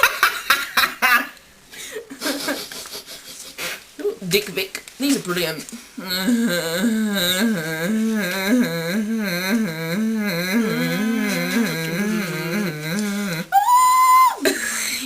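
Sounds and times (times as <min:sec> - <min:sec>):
young person singing warbling tune: 0:06.0 - 0:14.5.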